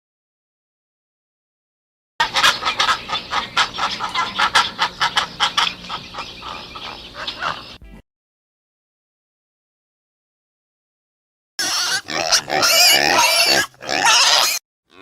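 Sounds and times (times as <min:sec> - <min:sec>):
farmyard fowl calling: 0:02.2 - 0:08.0, 0:11.6 - 0:15.0.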